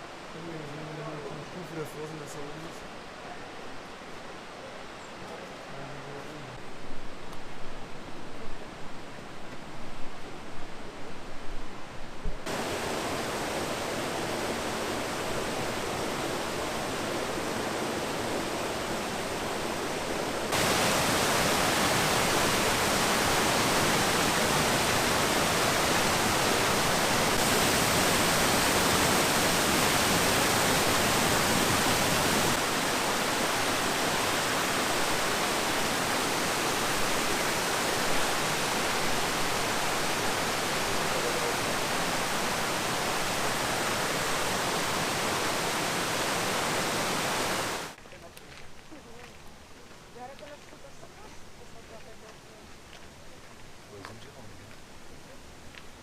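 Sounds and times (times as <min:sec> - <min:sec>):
waterfall roaring: 0:12.4 - 0:48.0.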